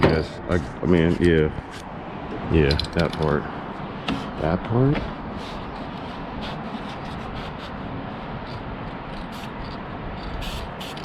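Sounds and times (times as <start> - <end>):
aerosol spray can hissing: 9.3 - 9.5, 10.4 - 11.0.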